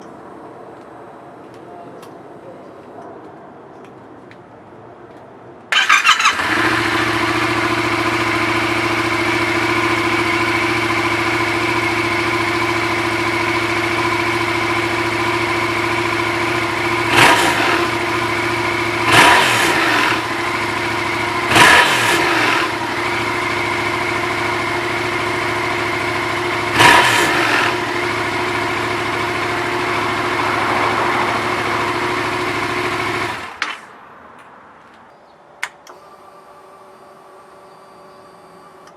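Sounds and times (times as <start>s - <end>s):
motorcycle engine idling and revving: 5.7s - 33.8s, 35.9s - 38.9s.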